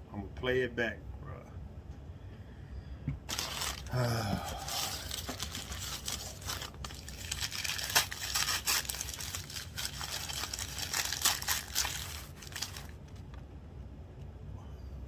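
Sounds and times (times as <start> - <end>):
packaging crinkling and rustling: 3.2 - 13.4.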